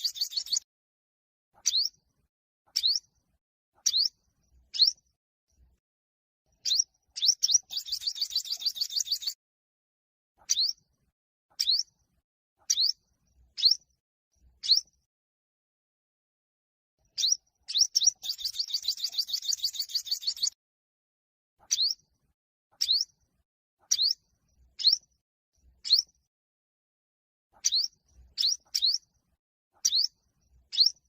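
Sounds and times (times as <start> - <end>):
sunbird singing: 0.0 - 0.6, 1.6 - 1.9, 2.8 - 3.0, 3.8 - 5.0, 6.6 - 9.4, 10.5 - 10.8, 11.6 - 11.8, 12.7 - 13.0, 13.6 - 13.8, 14.6 - 14.9, 17.1 - 20.6, 21.7 - 22.0, 23.9 - 24.2, 24.8 - 25.0, 25.8 - 26.1, 27.6 - 29.0, 29.8 - 30.1, 30.7 - 31.0.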